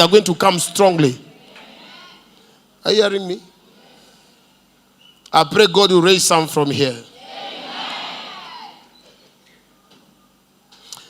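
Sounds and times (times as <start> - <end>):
congregation calling out together: 0.0 - 2.4, 6.7 - 8.9.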